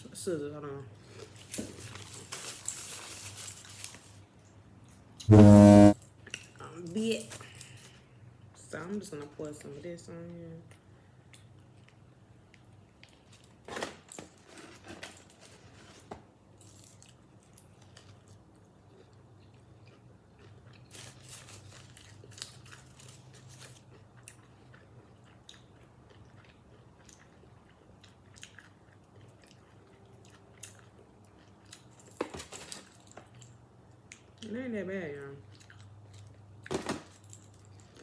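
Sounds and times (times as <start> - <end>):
person chewing crunchy food: 17.8 - 31.9.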